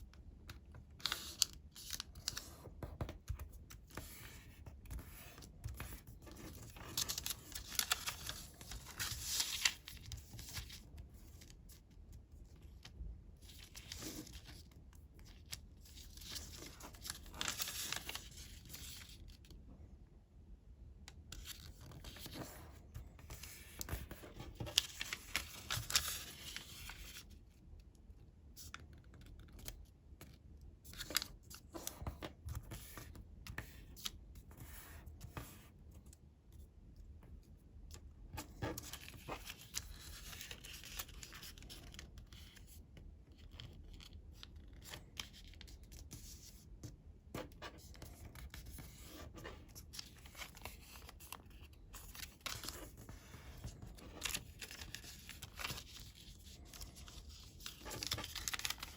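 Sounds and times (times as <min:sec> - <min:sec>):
paper being folded: 0:01.0 - 0:11.9, 0:12.5 - 0:19.3, 0:21.3 - 0:27.4, 0:38.7 - 0:42.7, 0:43.4 - 0:46.6, 0:47.4 - 0:58.9.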